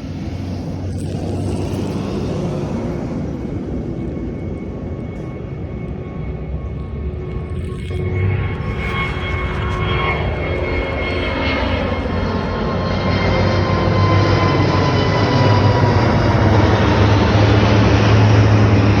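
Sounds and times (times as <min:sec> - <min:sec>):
jet engines roaring: 0:00.0 - 0:19.0.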